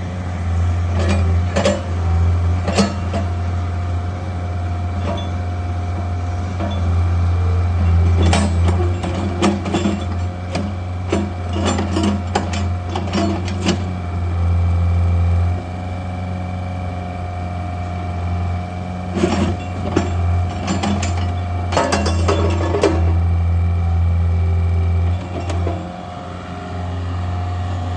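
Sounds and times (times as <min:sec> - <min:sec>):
diesel engine running: 0:00.0 - 0:27.9
metallic clanks and knocks: 0:19.2 - 0:23.2.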